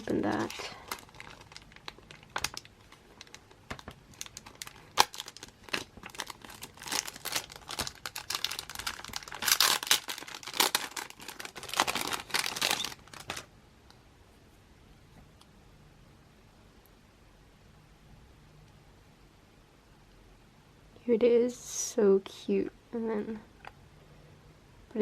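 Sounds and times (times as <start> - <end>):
packaging crinkling and tearing: 0.0 - 13.5.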